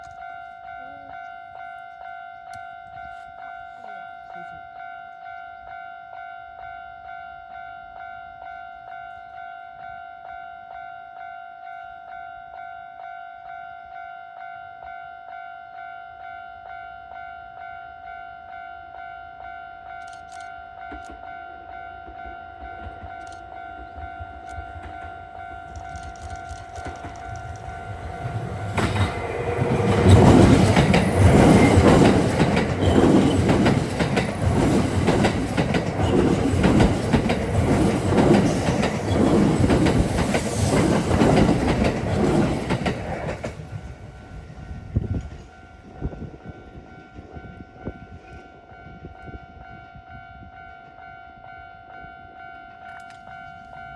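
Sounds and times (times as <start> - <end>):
level crossing warning bell: 0.0 - 43.4, 46.7 - 53.9
train wheels clattering over joints: 22.2 - 45.4.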